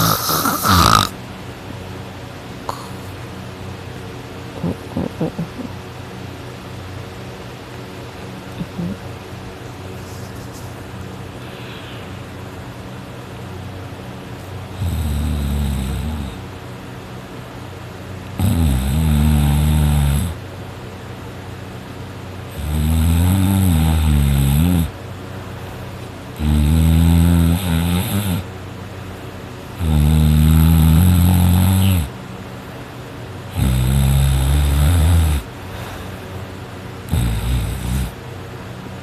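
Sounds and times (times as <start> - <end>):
person snoring loudly: 0.0 - 1.2, 4.6 - 5.7, 8.6 - 9.0, 14.7 - 16.4, 18.4 - 20.4, 22.5 - 25.0, 26.4 - 28.5, 29.8 - 32.1, 33.5 - 35.5, 37.1 - 38.2.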